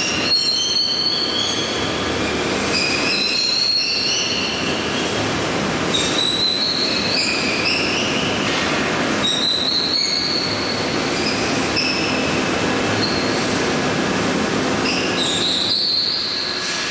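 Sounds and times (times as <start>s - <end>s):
high-pitched metal squeals: 0.0s - 1.9s, 2.7s - 5.0s, 5.9s - 8.3s, 9.2s - 12.2s, 14.8s - 16.8s.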